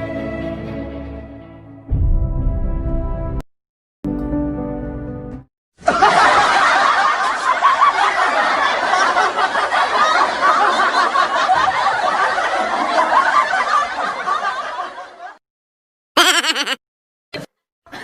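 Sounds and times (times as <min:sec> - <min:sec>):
overlapping laughter: 0:05.8 - 0:15.4, 0:16.2 - 0:16.8.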